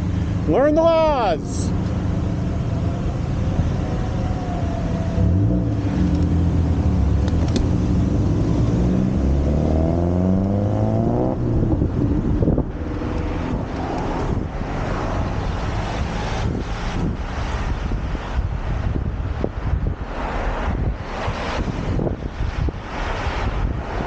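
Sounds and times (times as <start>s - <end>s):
steady rushing noise: 0.0s - 24.0s
vehicle engine revving: 5.1s - 17.7s.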